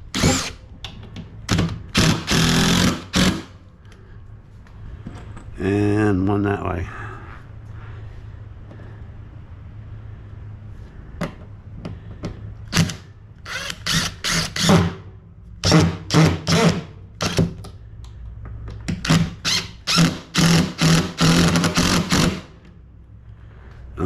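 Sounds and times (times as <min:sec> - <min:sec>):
power drill driving screw: 0:00.1 - 0:00.6, 0:01.5 - 0:03.5, 0:12.7 - 0:15.0, 0:15.6 - 0:17.5, 0:19.0 - 0:22.5.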